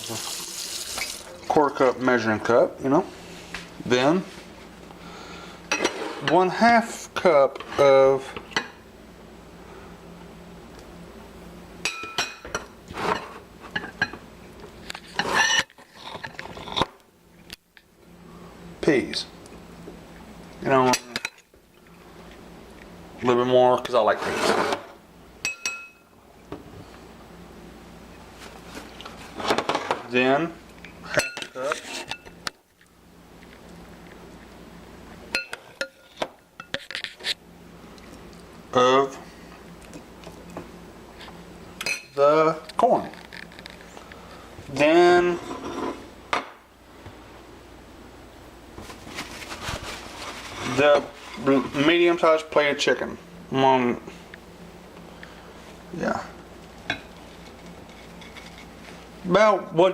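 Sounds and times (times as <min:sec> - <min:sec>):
kitchenware clinking: 0:05.7 - 0:06.4, 0:11.8 - 0:14.2, 0:25.4 - 0:26.1, 0:35.3 - 0:37.2.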